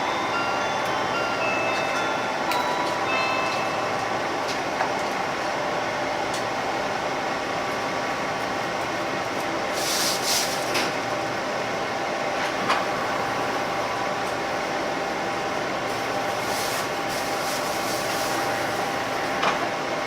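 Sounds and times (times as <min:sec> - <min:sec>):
railcar cabin rumble: 0:00.0 - 0:20.0.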